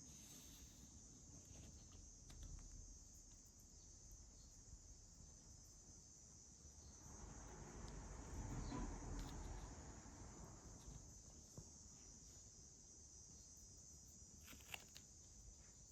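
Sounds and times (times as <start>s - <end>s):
high hiss: 0.0s - 1.2s.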